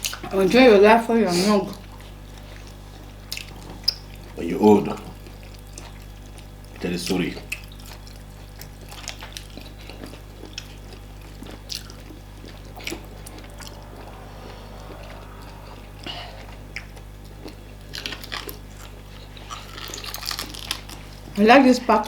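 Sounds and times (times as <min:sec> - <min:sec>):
steady low hum: 0:07.4 - 0:21.4.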